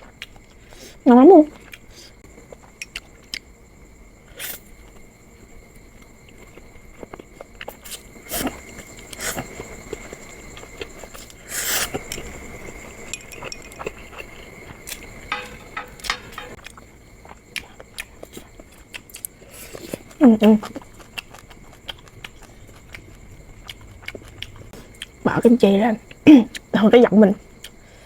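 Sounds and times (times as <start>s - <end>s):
utensils clicking against bowl: 15.3s - 16.6s
chewing and slurping noodles: 17.4s - 25.2s.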